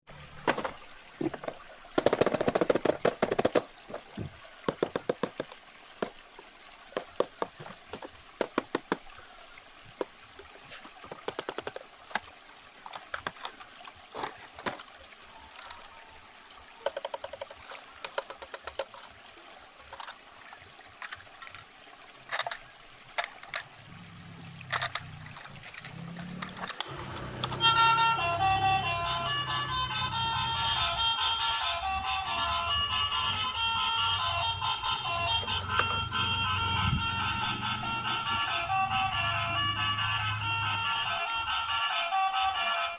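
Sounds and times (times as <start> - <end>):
water running and trickling: 0.1 - 41.5
packaging crinkling and clicking: 22.3 - 22.6, 24.7 - 26.9.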